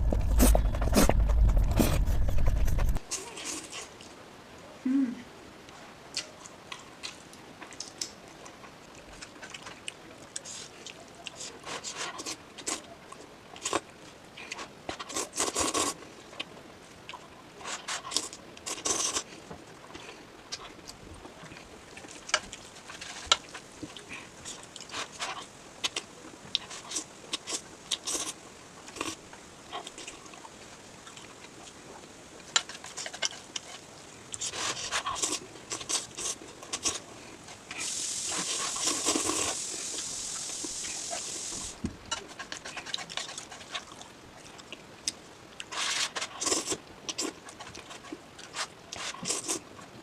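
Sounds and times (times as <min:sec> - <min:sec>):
chewing noodles: 0:06.1 - 0:31.8, 0:32.4 - 0:41.3, 0:42.1 - 0:50.0
steady hissing: 0:36.8 - 0:41.8.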